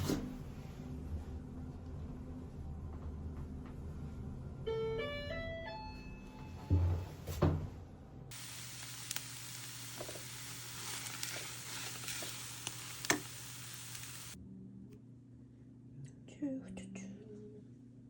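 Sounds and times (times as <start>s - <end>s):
food sizzling in a frying pan: 8.3s - 14.4s.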